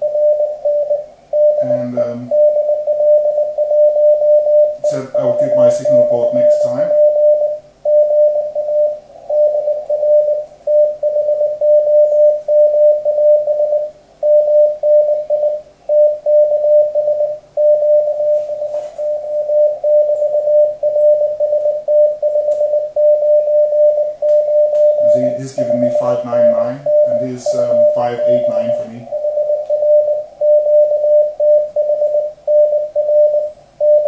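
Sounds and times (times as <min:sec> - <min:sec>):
faint radio hiss: 0:00.0 - 0:02.9, 0:04.7 - 0:07.9, 0:15.4 - 0:33.8
morse code tone: 0:00.0 - 0:34.0.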